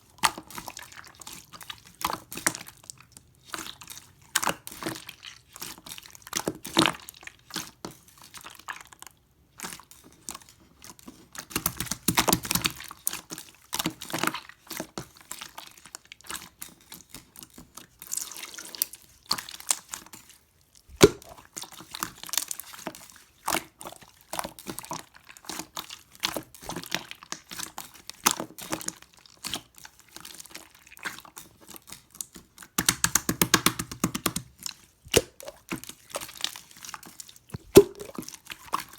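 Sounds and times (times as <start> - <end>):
sharp slime pop: 20.9 - 21.4, 32.8 - 34.5, 35.1 - 35.6, 37.6 - 38.2
slime clicking and popping: 21.0 - 21.3, 32.8 - 34.5, 35.1 - 35.6, 37.6 - 38.2
slime crackling: 37.6 - 38.2.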